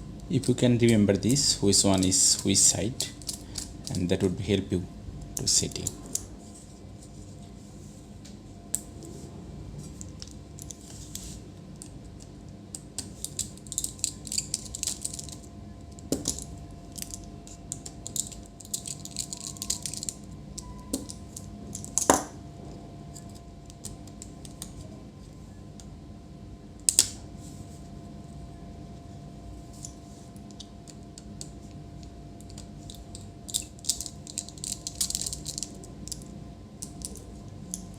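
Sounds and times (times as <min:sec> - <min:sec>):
small parts clicking: 0:00.4 - 0:04.0, 0:12.7 - 0:22.2, 0:30.5 - 0:37.9.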